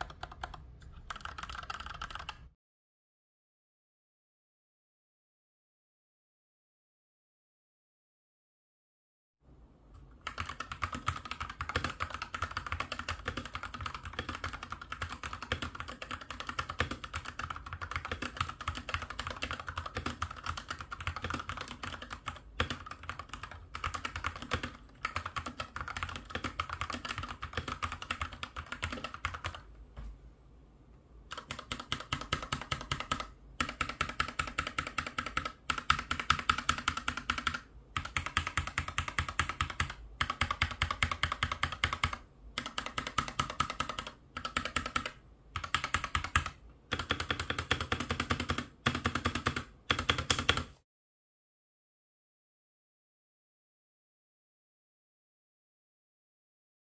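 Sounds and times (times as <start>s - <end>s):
fast keyboard typing: 0.0s - 2.5s, 10.2s - 29.7s, 31.3s - 50.8s.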